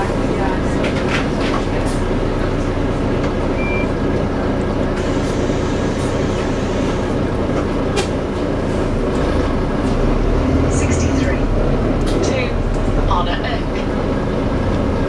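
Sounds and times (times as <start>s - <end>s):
bus drivetrain drone: 0.0s - 15.0s
short beep: 3.6s - 3.9s.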